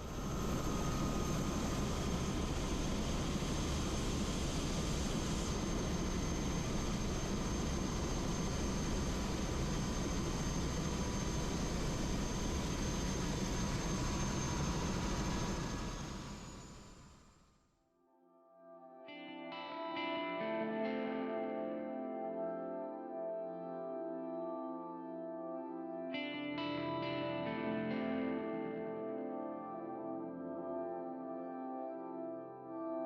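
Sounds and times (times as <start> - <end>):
helicopter flying: 0.0 - 17.3.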